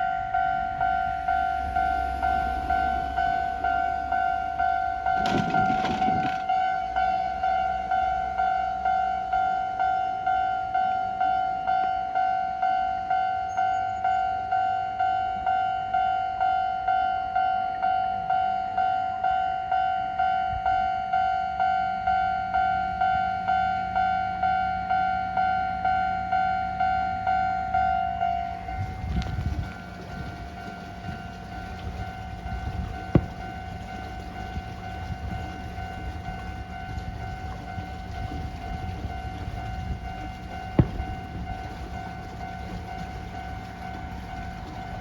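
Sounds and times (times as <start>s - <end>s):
level crossing alarm ringing: 0.0s - 45.0s
low rumble: 28.3s - 45.0s.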